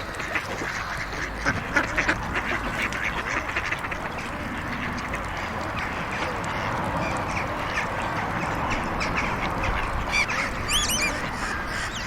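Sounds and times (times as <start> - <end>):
ducks quacking: 0.0 - 12.0
traffic hum: 0.0 - 12.0
small bird chirping: 10.7 - 11.2.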